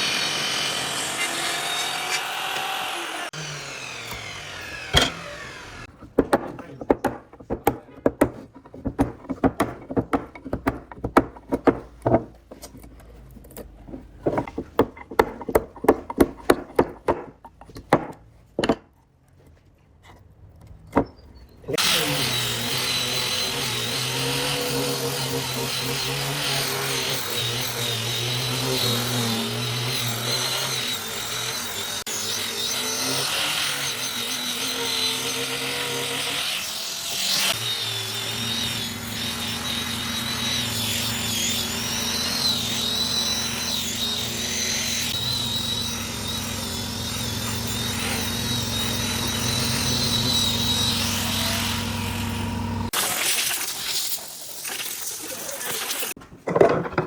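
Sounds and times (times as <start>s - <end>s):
power tool running: 0.0s - 5.9s, 21.8s - 56.2s
knocks on wood: 6.1s - 12.3s.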